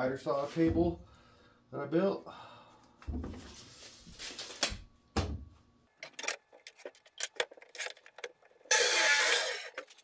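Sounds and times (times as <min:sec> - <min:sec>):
miter saw cutting wood: 0:08.7 - 0:09.9.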